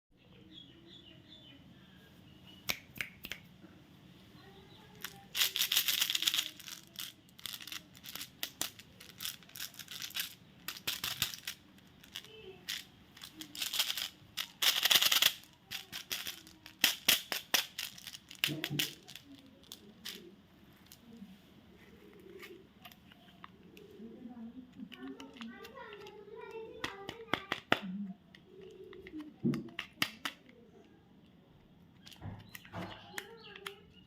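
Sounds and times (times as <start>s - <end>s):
sweets clicking and rattling: 4.9s - 21.2s, 24.6s - 30.6s, 31.9s - 34.0s
wrapper crinkling and tearing: 5.0s - 20.2s.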